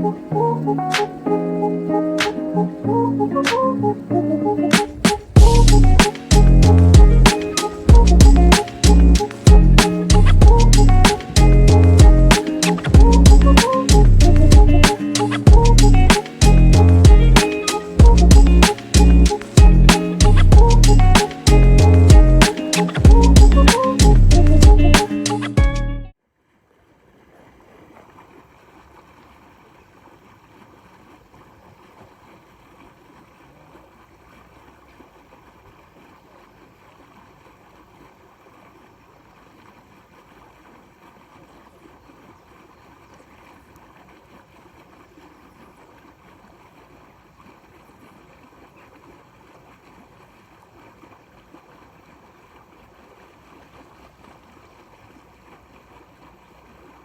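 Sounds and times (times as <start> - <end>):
faint outdoor hiss: 0.0 - 25.6.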